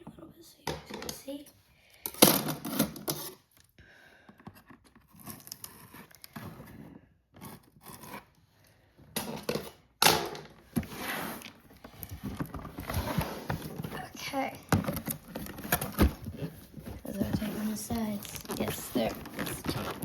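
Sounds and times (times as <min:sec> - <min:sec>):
cardboard tearing and rustling: 0:14.9 - 0:20.0.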